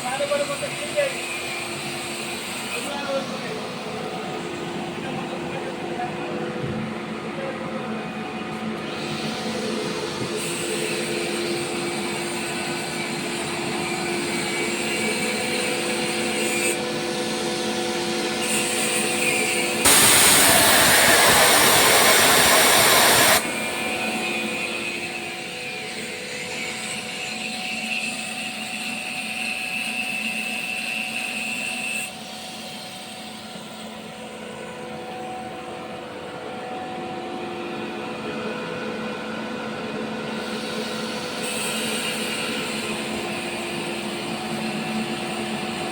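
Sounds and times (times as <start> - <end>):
air compressor humming: 0.0 - 27.4, 33.3 - 45.9
air hissing: 18.8 - 25.6.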